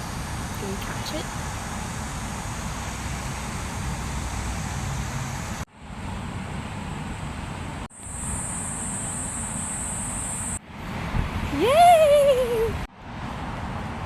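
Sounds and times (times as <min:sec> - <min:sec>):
road traffic rumble: 0:00.0 - 0:14.0
thin high-pitched whine: 0:08.0 - 0:10.6.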